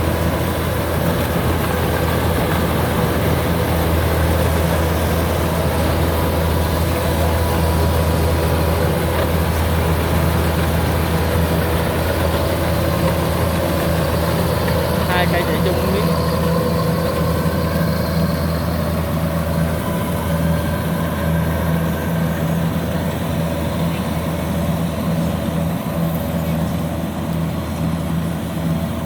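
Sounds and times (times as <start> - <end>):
diesel engine drone: 0.0 - 29.0
machine hum: 0.0 - 29.0.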